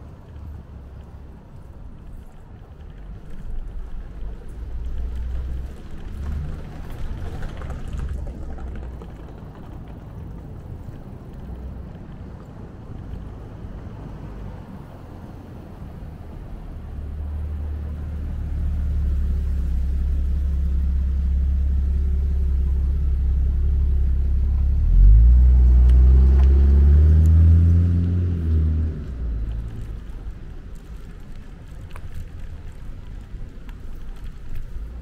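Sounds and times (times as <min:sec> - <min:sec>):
vehicle engine accelerating: 0:03.2 - 0:32.8.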